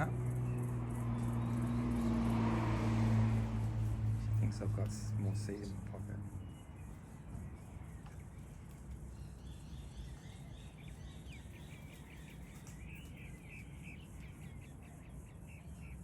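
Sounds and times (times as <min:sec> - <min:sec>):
low outdoor rumble: 0:00.0 - 0:09.2
bird chirping: 0:00.0 - 0:16.0.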